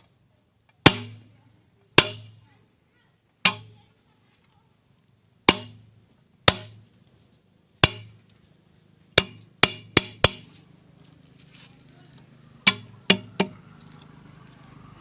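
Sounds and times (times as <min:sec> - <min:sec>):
sharp ringing knocks: 0:09.2 - 0:10.6, 0:12.6 - 0:13.6.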